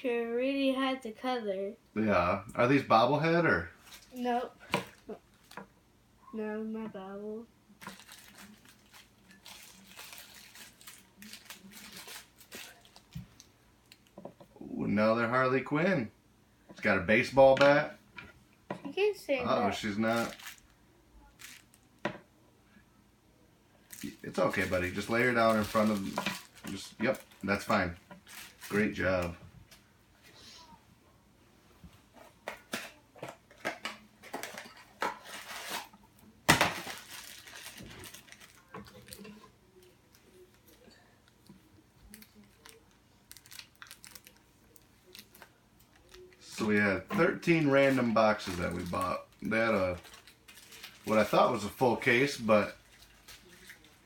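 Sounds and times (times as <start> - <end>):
packaging crinkling and tearing: 7.8 - 14.1, 20.0 - 20.7, 21.4 - 21.8, 23.9 - 29.3, 34.2 - 39.3, 42.1 - 46.5, 47.5 - 54.0
plastic bag tearing: 7.8 - 14.1, 20.0 - 20.7, 21.4 - 21.8, 23.9 - 29.3, 34.4 - 39.2, 42.1 - 46.6, 47.5 - 54.0.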